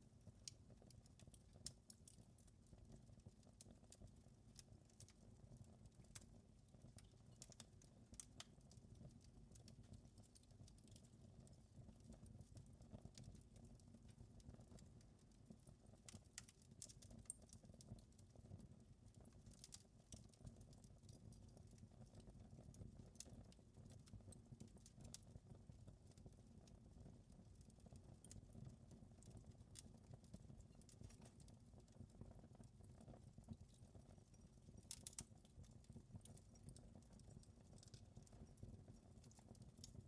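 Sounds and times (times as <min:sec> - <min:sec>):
wood fire crackling: 0:00.2 - 0:40.0.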